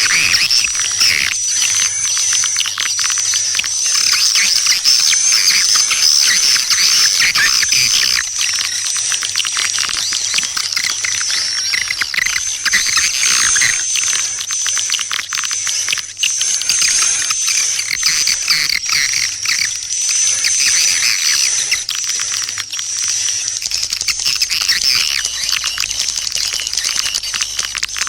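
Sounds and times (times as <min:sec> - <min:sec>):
swiftlets twittering and chirping: 0:00.0 - 0:28.0
steady high whistle tone: 0:11.6 - 0:14.8, 0:16.2 - 0:18.7.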